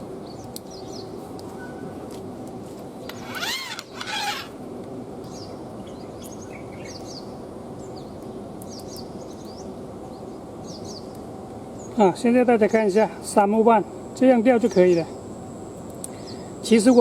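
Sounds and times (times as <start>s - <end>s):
steady outdoor hum: 0.0s - 17.0s
small birds chirping: 0.2s - 2.0s, 5.2s - 12.8s, 14.4s - 15.2s, 15.9s - 17.0s.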